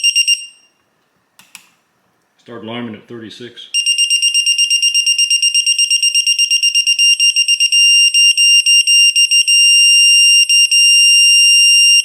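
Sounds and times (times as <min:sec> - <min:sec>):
torque wrench alarm beeping: 0:00.0 - 0:00.7, 0:03.8 - 0:12.0.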